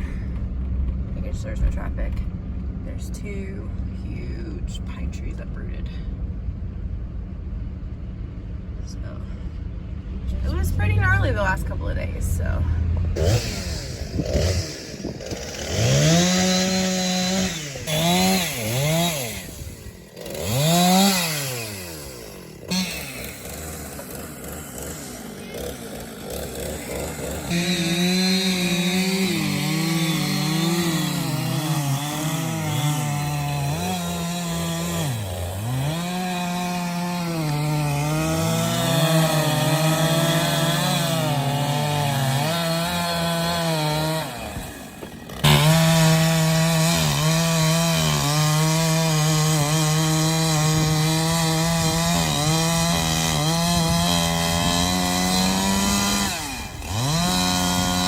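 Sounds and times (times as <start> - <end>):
chainsaw cutting wood: 13.2 - 58.0.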